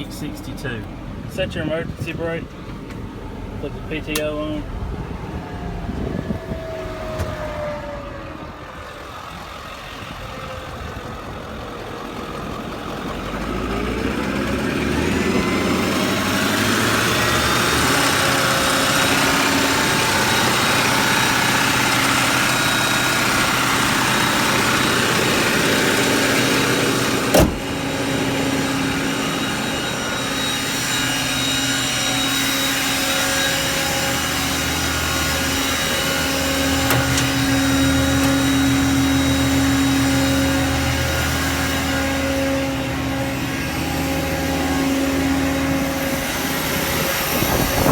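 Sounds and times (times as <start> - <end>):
truck engine running: 0.0 - 47.9
air compressor running: 9.8 - 47.9.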